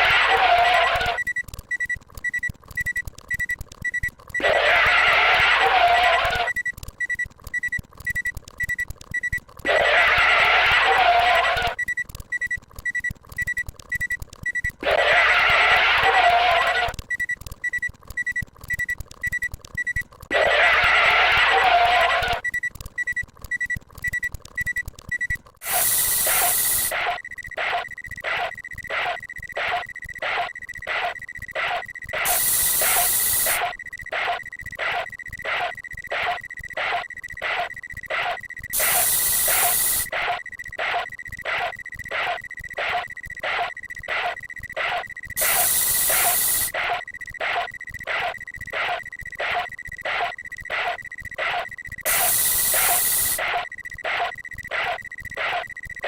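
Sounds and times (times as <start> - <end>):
short beeps: 17.1 - 20.0, 22.3 - 56.0.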